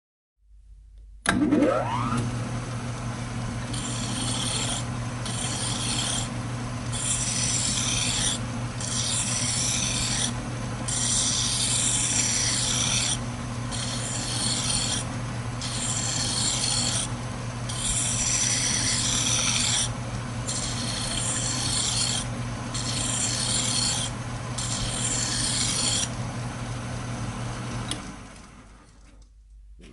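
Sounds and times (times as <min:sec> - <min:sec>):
lathe humming: 0:01.3 - 0:28.4
hand file scraping metal: 0:03.7 - 0:06.3, 0:06.9 - 0:17.1, 0:17.7 - 0:26.1.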